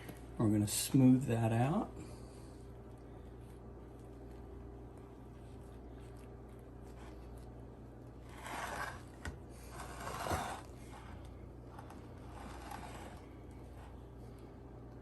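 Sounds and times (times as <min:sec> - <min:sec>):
utensil scraping cream filling: 0:02.7 - 0:14.6.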